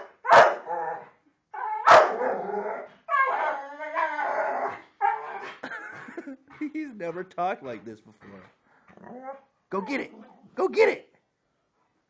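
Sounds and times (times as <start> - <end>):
dog yipping: 0.3 - 1.0, 1.6 - 5.6
dog howling and yowling: 0.6 - 5.4.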